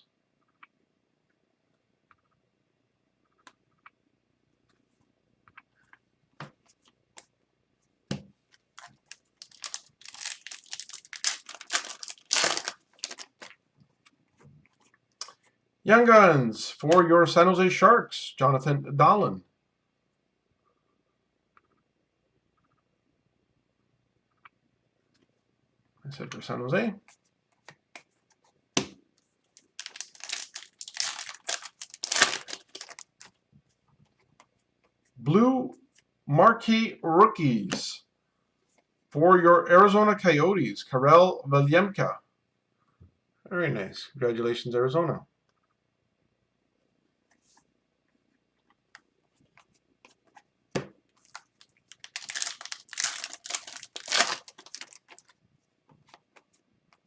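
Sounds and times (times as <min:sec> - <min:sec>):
foil wrapper crinkling and tearing: 0:08.6 - 0:13.5, 0:29.6 - 0:33.3, 0:51.2 - 0:55.4.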